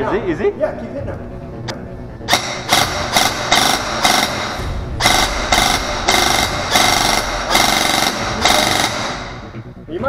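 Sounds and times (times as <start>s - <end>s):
electric rifle full-auto bursts: 2.3s - 9.6s.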